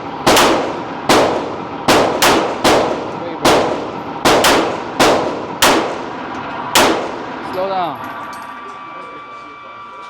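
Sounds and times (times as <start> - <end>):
handgun shots echoing: 0.3 - 6.1, 6.8 - 7.3.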